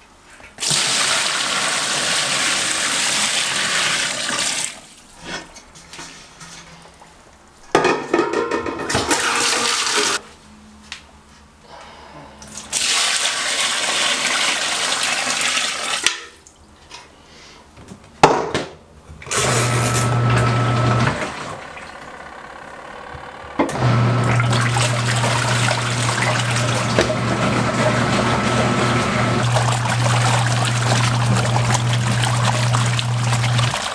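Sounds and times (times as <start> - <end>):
water rushing into tub: 0.6 - 4.9, 9.0 - 10.2, 12.5 - 16.1, 19.3 - 22.1, 23.7 - 33.9
washing machine motor humming: 19.2 - 33.9
water churning: 23.7 - 33.9.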